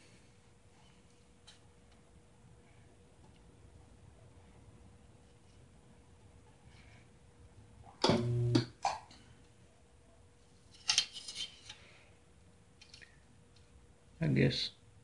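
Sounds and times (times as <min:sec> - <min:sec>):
spot welder buzzing: 0:08.0 - 0:08.7.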